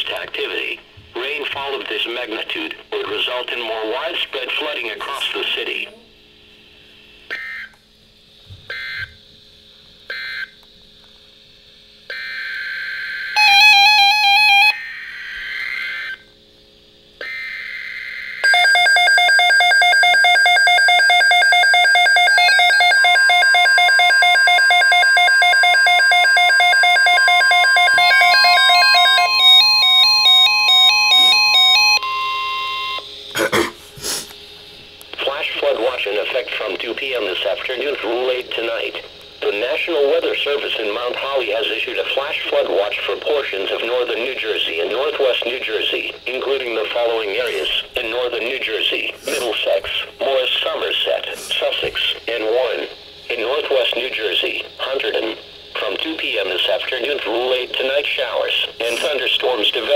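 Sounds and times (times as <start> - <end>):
steady warning tone: 8.6 - 9.4, 12.1 - 16.4, 17.2 - 33.4, 35.1 - 59.9
electronic alarm melody: 12.2 - 16.2, 17.3 - 33.0
digital data bursts: 20.5 - 32.0.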